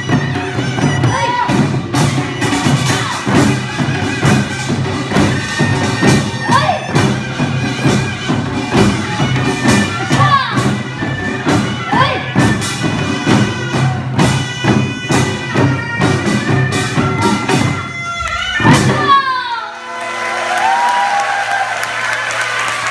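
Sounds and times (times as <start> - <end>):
reedy wind instrument tone: 0.0 - 20.5
audience applause and cheers: 19.7 - 22.9.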